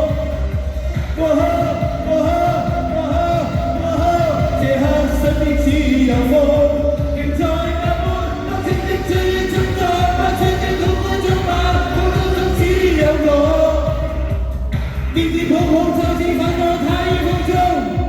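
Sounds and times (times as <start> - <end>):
backing track bass beat: 0.0 - 18.0
pop song singing: 0.0 - 18.0.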